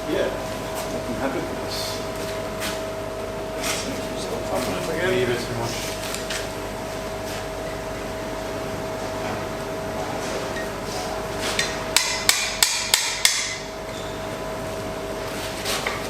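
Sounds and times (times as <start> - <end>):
steady hum: 0.0 - 16.0
hammer striking iron on anvil: 11.6 - 13.7.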